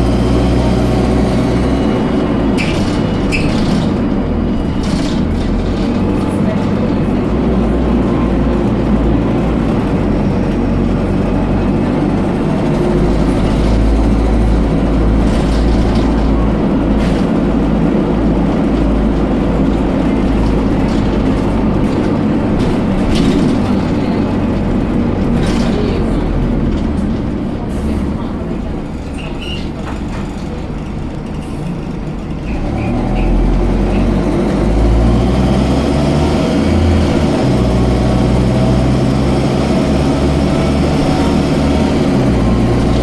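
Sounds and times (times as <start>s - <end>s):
bus diesel engine droning: 0.0s - 43.0s
knocks and rattles: 2.3s - 6.8s, 12.5s - 27.4s.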